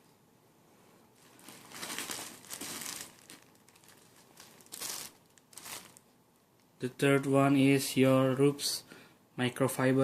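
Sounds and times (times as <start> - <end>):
plastic packaging crinkling: 1.2 - 6.1.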